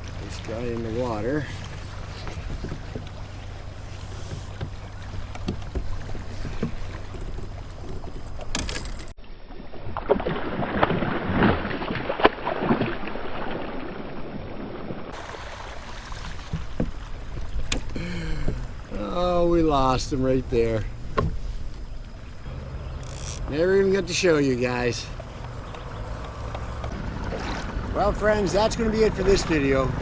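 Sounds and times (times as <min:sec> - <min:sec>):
water sloshing and splashing: 0:00.0 - 0:30.0
small knocks on kayak: 0:02.2 - 0:09.0, 0:16.2 - 0:18.7, 0:21.1 - 0:21.5.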